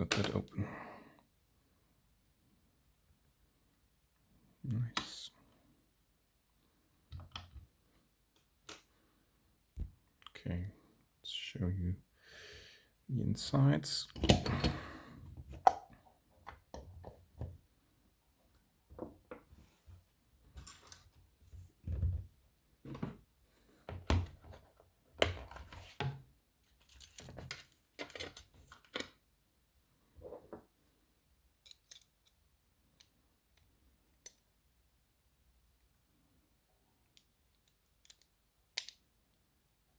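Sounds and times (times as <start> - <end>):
lock parts clicking and rattling: 14.1 - 15.8, 26.8 - 29.2, 31.6 - 32.4, 37.2 - 39.1.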